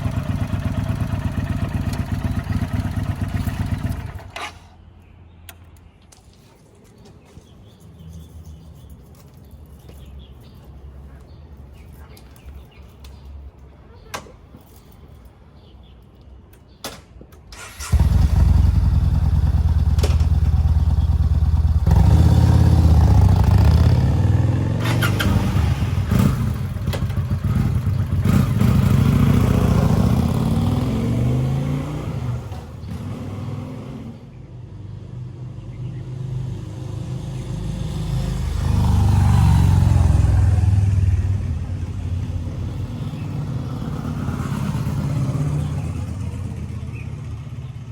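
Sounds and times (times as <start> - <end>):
motorcycle engine revving: 0.0 - 4.6, 17.6 - 34.3, 37.3 - 47.9.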